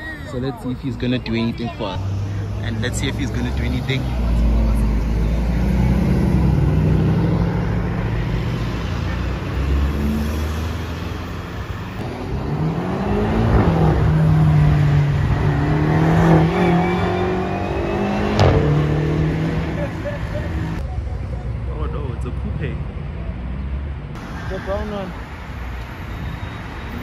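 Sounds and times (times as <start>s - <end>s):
car engine revving: 2.0s - 20.8s.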